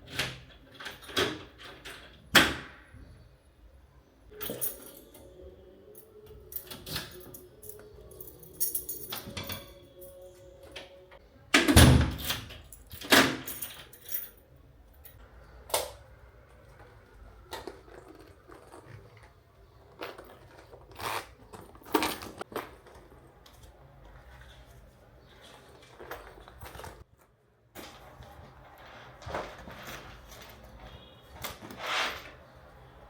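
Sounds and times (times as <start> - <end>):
clicks and rattles of handling: 16.8 - 27.1.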